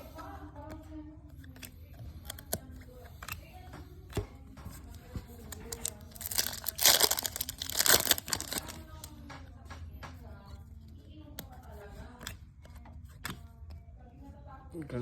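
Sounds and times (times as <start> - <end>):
cards flipping: 1.5 - 9.1
foil wrapper tearing: 5.7 - 8.9.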